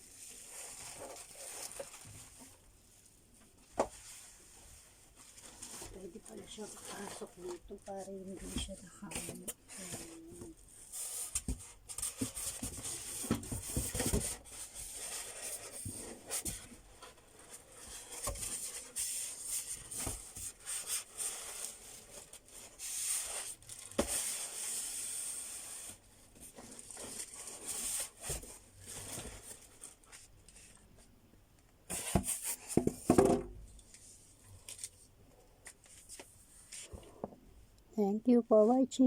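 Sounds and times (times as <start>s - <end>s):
rustling and rubbing: 0.0s - 31.1s.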